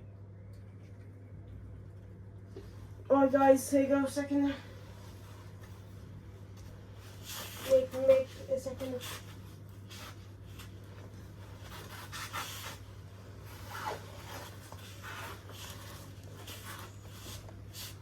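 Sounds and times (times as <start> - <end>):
steady low hum: 0.0 - 18.0
faint rubbing and scraping: 6.9 - 18.0.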